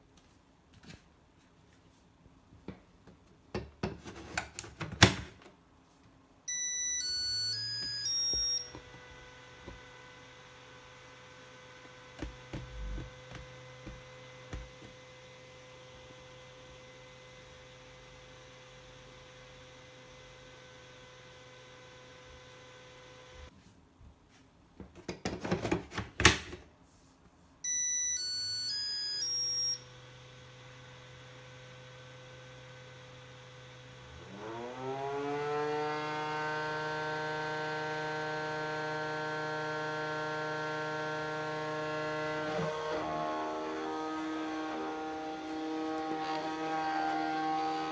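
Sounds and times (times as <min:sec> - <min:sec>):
charger beeping melody: 0:06.5 - 0:08.8, 0:27.7 - 0:29.8.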